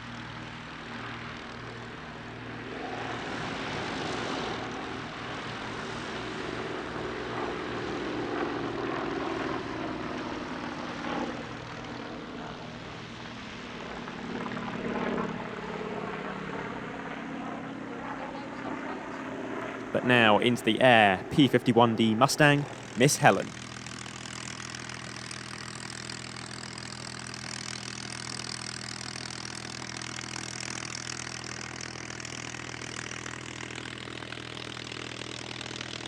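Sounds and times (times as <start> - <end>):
propeller aircraft flying past: 0.0 - 36.0.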